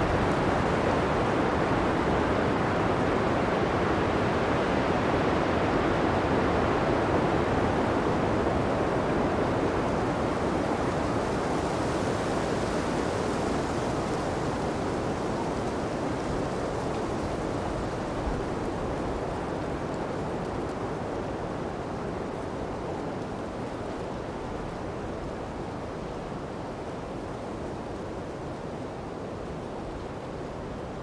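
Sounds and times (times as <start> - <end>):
blizzard wind blowing: 0.0 - 22.8.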